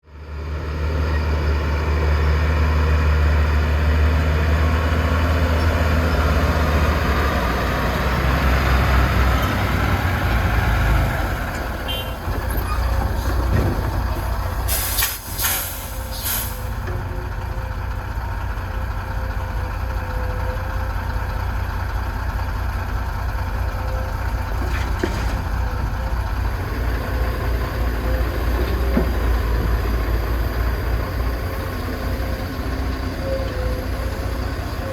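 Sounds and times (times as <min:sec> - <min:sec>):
excavator diesel engine droning: 0:00.0 - 0:34.9
short sharp hisses: 0:14.7 - 0:16.7.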